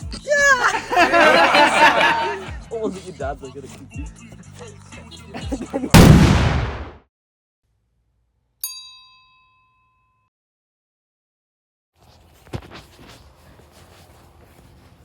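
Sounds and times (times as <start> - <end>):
crash-like burst of noise: 6.0 - 7.0
bell ding: 8.6 - 10.3.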